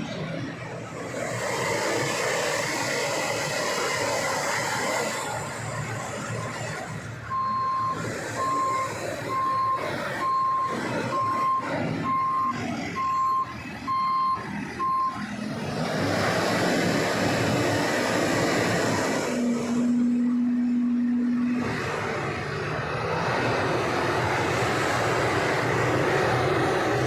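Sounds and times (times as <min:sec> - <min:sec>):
heavy vehicle engine: 0:00.0 - 0:27.0
reversing alarm beeps: 0:06.3 - 0:15.2.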